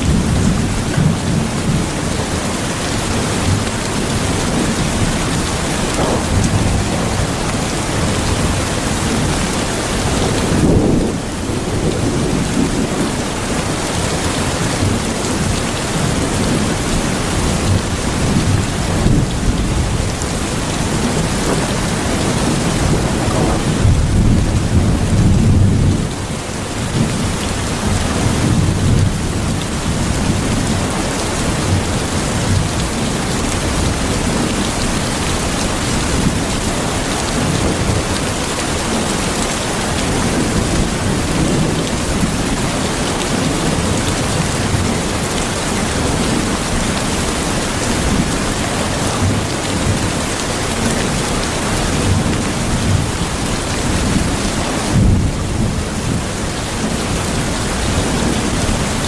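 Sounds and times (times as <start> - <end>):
heavy rain: 0.0 - 59.0
low rolling thunder: 3.0 - 26.2, 26.9 - 59.0.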